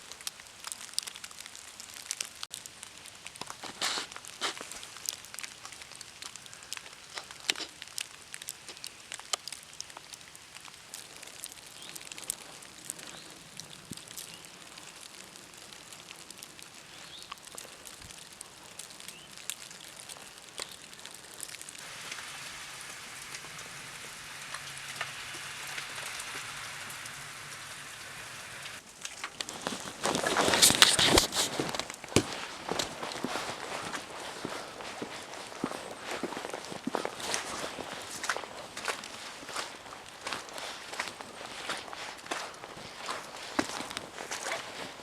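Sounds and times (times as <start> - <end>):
flakes and drips pattering: 0.0 - 45.0
wet snow falling: 0.0 - 45.0
steady hiss with low hum: 20.2 - 32.9.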